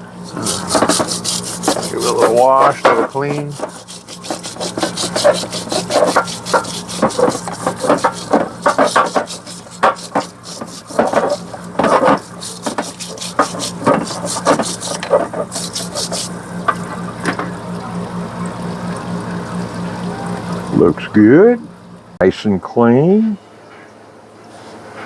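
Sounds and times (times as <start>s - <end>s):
steady low hum: 0.0s - 25.0s
scrubbing strokes: 0.1s - 17.3s
liquid splashing: 0.2s - 20.8s.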